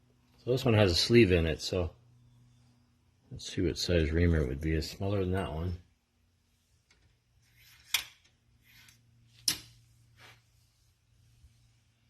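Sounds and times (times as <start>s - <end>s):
faint low hum: 0.0s - 12.0s
soft rustling: 8.6s - 12.0s.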